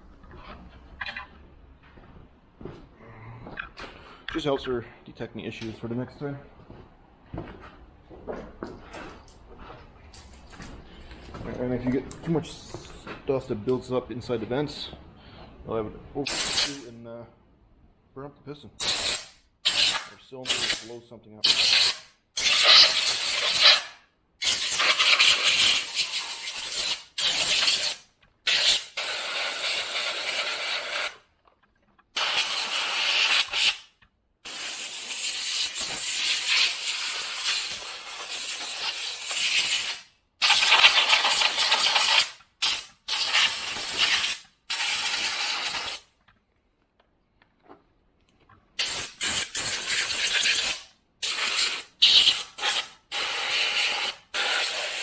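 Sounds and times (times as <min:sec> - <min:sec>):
compressed air blow gun hissing: 0:16.3 - 0:16.8, 0:48.8 - 0:55.0.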